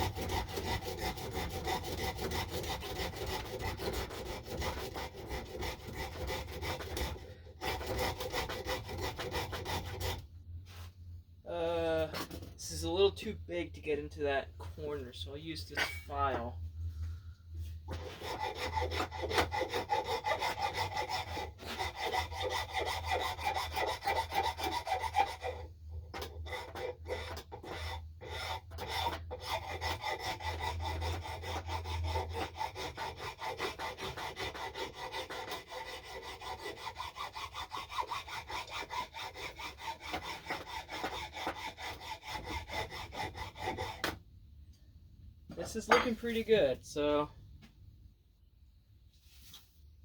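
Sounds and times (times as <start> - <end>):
hand file rasping on wood: 0.0 - 10.3, 12.0 - 12.6, 17.9 - 44.2.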